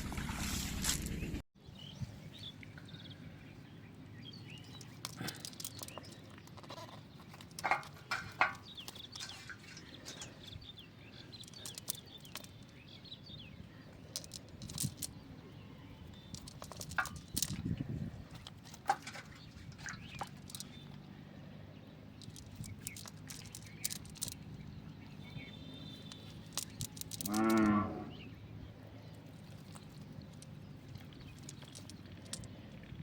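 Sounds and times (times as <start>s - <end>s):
small birds chirping: 1.2s - 33.0s
sharp clicks and knocks: 4.8s - 10.4s, 16.3s - 17.7s, 22.2s - 24.5s.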